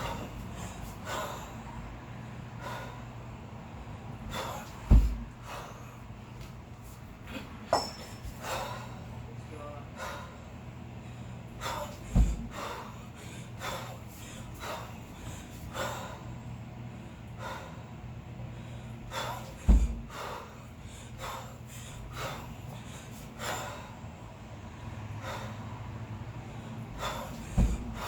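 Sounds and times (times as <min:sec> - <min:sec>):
sharp rhythmic exhales: 0:00.0 - 0:09.2, 0:09.9 - 0:28.0
heavy dull thuds: 0:04.5 - 0:05.4, 0:12.0 - 0:12.7, 0:19.5 - 0:20.3, 0:27.0 - 0:28.0.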